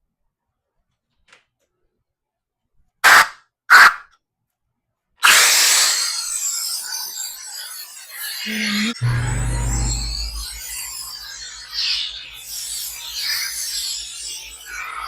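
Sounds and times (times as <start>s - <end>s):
music: 8.5s - 15.0s.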